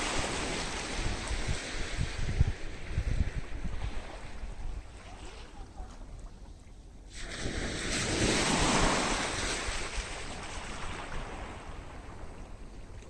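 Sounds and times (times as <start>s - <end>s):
sea wave breaking on beach: 0.0s - 2.2s, 7.1s - 12.1s
wind rumble on microphone: 0.0s - 13.0s.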